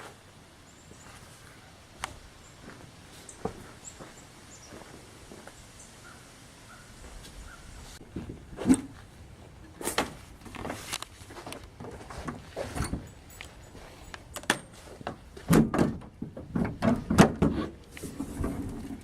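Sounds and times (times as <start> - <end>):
knocks and clunks: 14.4 - 19.0.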